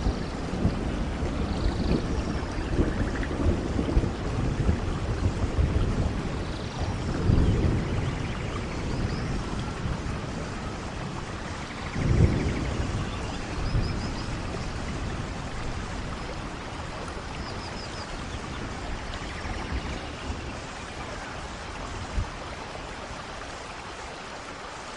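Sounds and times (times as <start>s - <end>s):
thunder rolling: 0.0s - 22.8s
steady rain: 0.0s - 24.9s.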